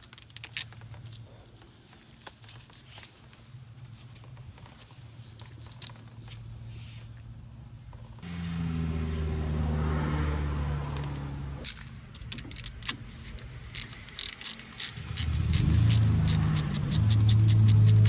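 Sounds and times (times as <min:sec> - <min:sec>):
sharp metallic clicks: 0:11.6 - 0:18.0
small motor running: 0:13.8 - 0:18.0.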